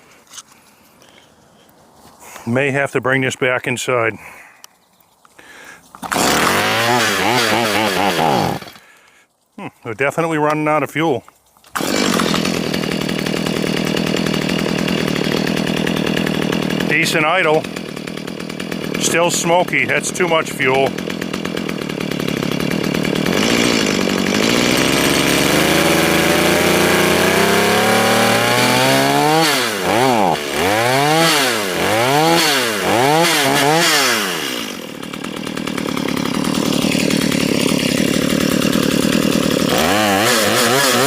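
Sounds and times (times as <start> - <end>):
chainsaw engine revving: 6.0 - 9.0, 11.7 - 41.0.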